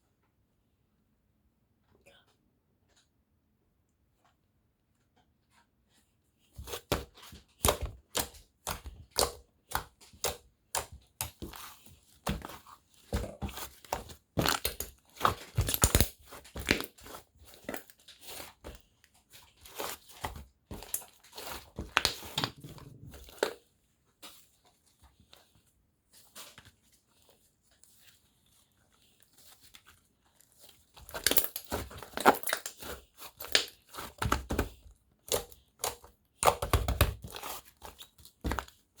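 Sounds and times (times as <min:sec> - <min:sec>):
slime squished by hand: 0:06.6 - 0:18.5, 0:30.4 - 0:38.8.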